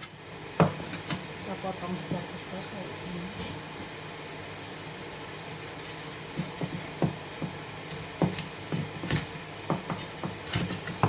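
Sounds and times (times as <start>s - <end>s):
steady low hum: 0.0s - 11.0s
knife chopping on cutting board: 6.3s - 11.0s.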